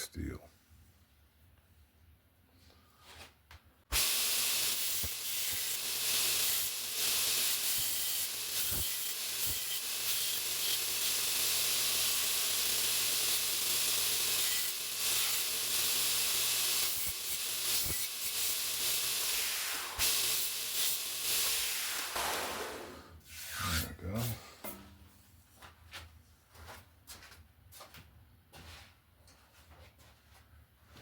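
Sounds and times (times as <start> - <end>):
grinder hissing on steel: 3.9 - 24.4.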